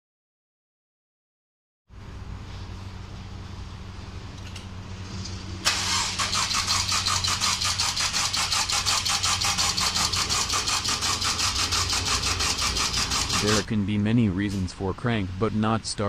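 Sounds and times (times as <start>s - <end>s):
steady low hum: 1.9s - 16.0s
car starter cranking: 5.6s - 13.6s.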